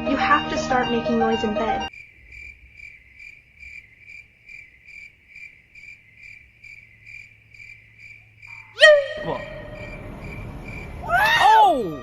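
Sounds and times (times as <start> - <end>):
crickets chirping: 1.9 - 12.0
faint low hum: 8.6 - 11.4.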